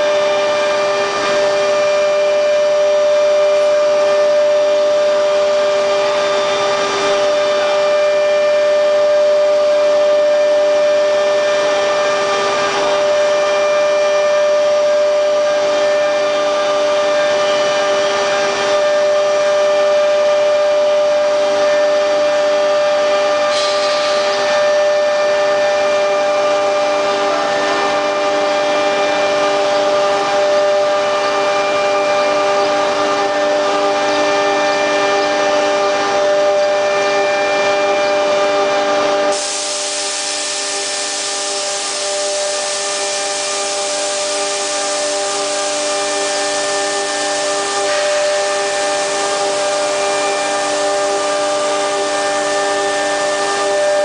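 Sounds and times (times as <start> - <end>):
router spindle high whine: 0.0 - 54.0
brief scrape: 23.5 - 24.5.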